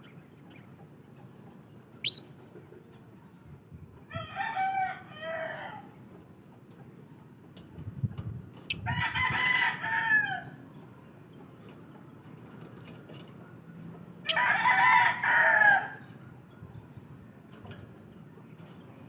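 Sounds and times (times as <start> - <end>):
rooster crowing: 4.1 - 5.9, 8.9 - 10.6, 14.3 - 16.0.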